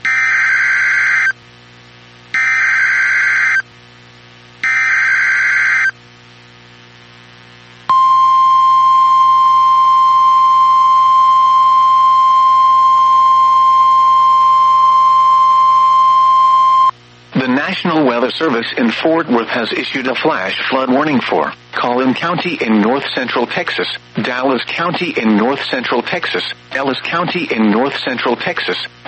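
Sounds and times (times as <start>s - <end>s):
steady attention tone: 7.9s - 16.9s.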